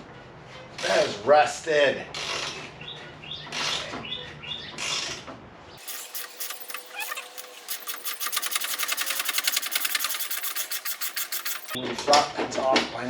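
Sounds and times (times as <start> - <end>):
hand ratchet clicking: 5.8 - 11.8.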